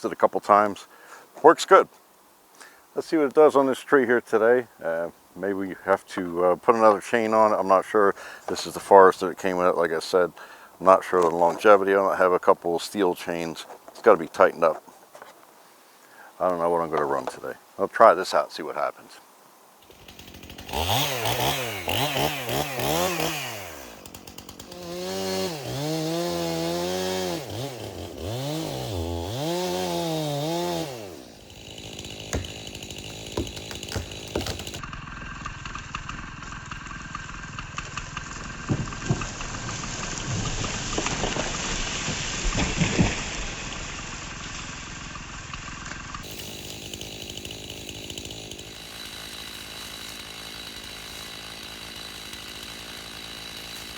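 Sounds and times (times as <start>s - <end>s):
chainsaw revving: 19.8s - 38.6s, 46.2s - 53.9s
sharp knocks: 32.2s - 34.8s.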